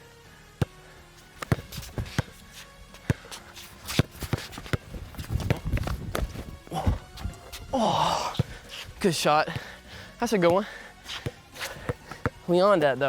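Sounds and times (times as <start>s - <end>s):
faint background music: 0.0s - 13.0s
basketball bouncing: 1.4s - 2.4s, 3.9s - 7.6s
sneakers landing on court: 1.4s - 2.4s, 3.8s - 7.7s.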